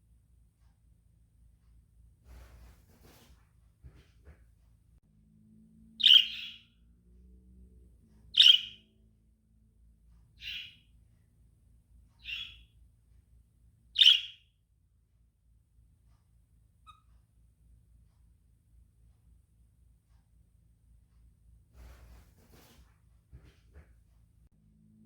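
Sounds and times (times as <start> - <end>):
lovebird chirping: 6.0 - 6.8, 8.3 - 8.9, 10.4 - 10.9, 12.2 - 12.8, 14.0 - 14.5, 16.8 - 17.1.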